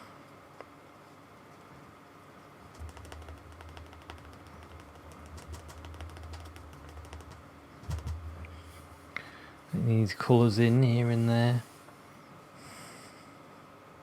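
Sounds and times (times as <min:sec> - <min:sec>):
paintbrush tapping on canvas: 0:02.8 - 0:08.3
loud knock: 0:07.8 - 0:08.4.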